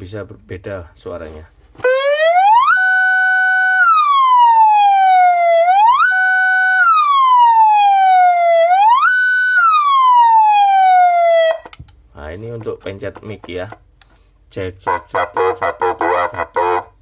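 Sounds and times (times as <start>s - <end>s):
electronic siren wailing: 1.8s - 11.7s, 15.1s - 17.0s.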